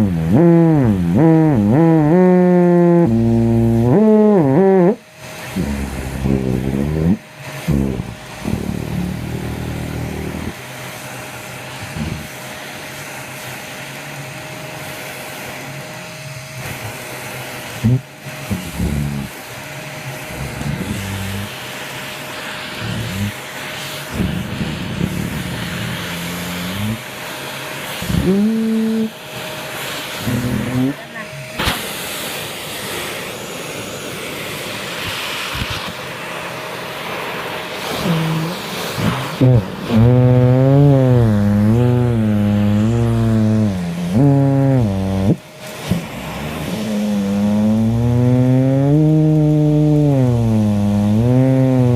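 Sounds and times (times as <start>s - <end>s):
low buzzing sputters: 0.0s - 13.0s, 17.7s - 27.2s, 27.9s - 31.8s, 37.6s - 51.9s
vacuum cleaner whining: 0.0s - 51.9s.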